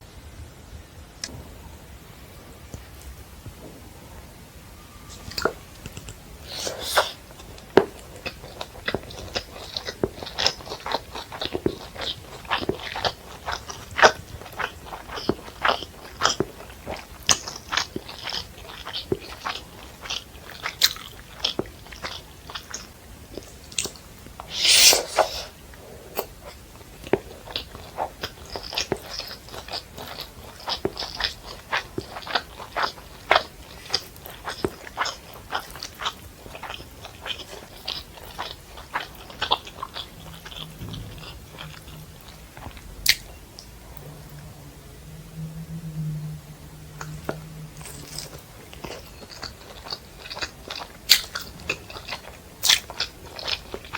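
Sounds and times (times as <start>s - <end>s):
chewing with wet mouth clicks: 5.2s - 44.5s, 47.0s - 53.9s.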